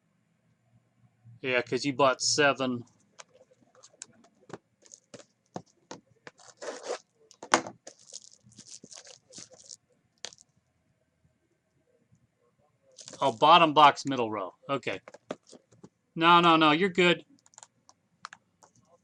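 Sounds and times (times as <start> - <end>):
plastic wrap crinkling: 3.2 - 10.4, 13.0 - 13.6
boxes scraping: 6.3 - 7.0.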